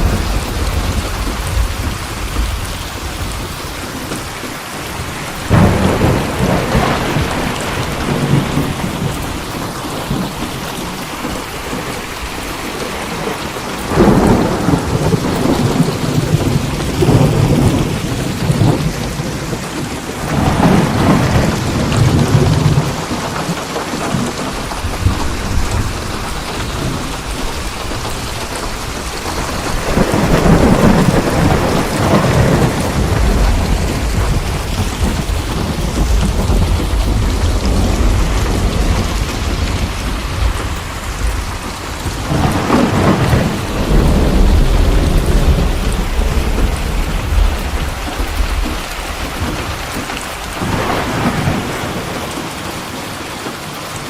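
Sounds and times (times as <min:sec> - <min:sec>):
thunder rumbling: 0:00.0 - 0:53.7
steady rain falling: 0:00.0 - 0:54.0.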